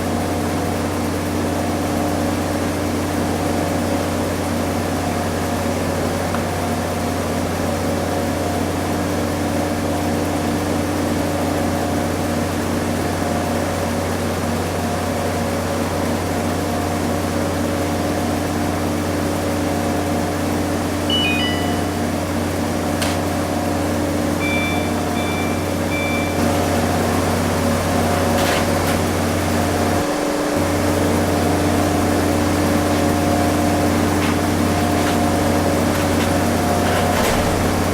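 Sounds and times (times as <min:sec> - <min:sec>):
washing machine spinning: 0:00.0 - 0:37.9.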